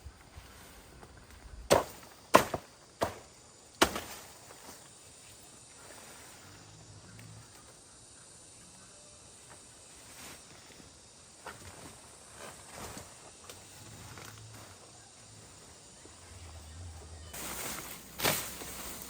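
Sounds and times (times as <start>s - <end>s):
sharp chopping impacts: 1.7s - 4.3s.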